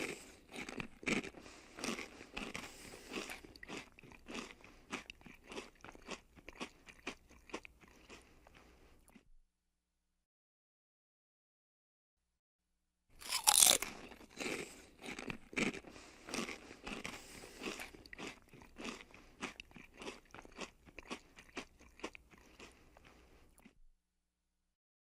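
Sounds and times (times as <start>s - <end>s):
chips crunching: 0.0s - 8.2s, 13.2s - 22.8s.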